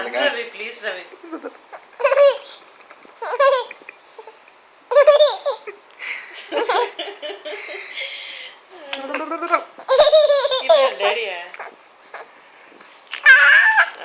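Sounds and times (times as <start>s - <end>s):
steady hissing noise: 0.0s - 14.0s
baby laughing: 1.2s - 2.6s, 3.2s - 5.8s, 9.0s - 12.3s, 13.2s - 14.0s.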